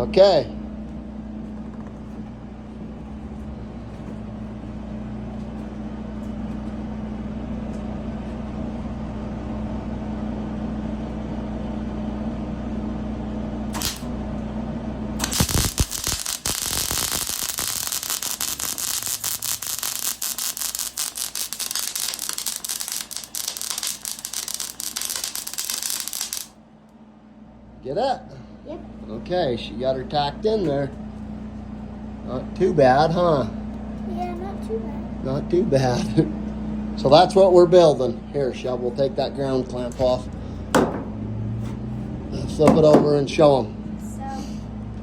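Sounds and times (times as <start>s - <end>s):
arc welder humming: 0.0s - 45.0s
welding arc crackle: 13.7s - 14.2s, 15.2s - 26.6s.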